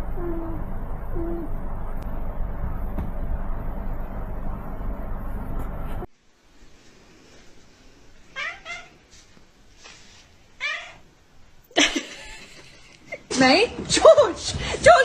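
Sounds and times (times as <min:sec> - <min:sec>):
cat meowing: 0:08.3 - 0:09.0, 0:10.6 - 0:11.1.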